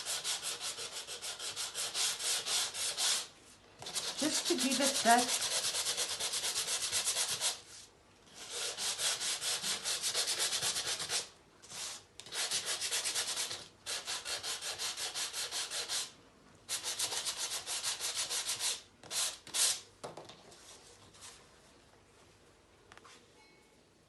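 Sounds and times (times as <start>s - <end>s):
sanding block scuffing paper: 0.0s - 16.1s.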